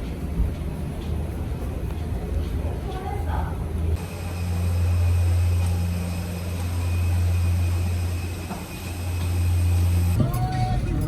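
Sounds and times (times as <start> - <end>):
vehicle engine drone: 0.0 - 11.0
faint high whine: 4.0 - 11.0.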